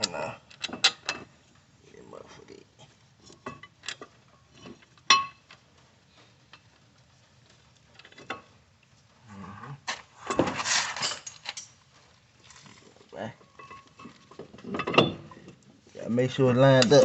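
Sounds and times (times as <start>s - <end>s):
metal clank: 3.4s - 5.5s, 13.5s - 15.6s
metal rattling and scraping: 9.9s - 17.0s.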